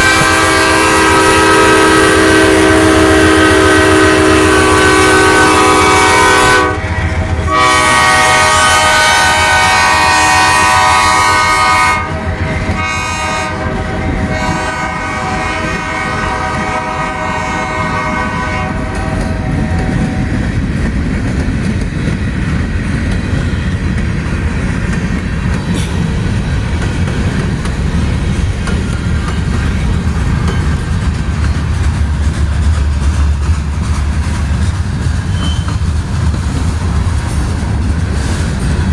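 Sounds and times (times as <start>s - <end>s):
locomotive air horn chord: 0.0s - 19.9s
wheels clicking over rail joints: 18.6s - 38.9s.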